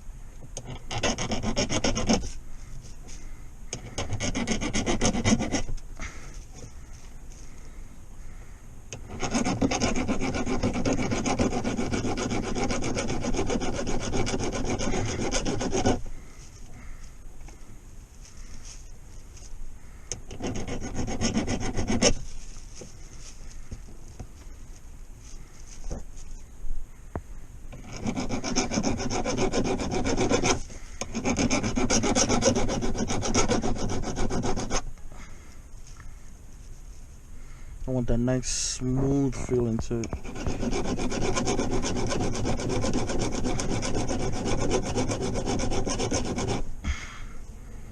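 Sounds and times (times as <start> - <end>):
hand file rasping on metal: 0.6 - 2.4, 3.7 - 5.8, 9.0 - 16.1, 20.2 - 22.2, 27.8 - 34.8, 40.0 - 46.7.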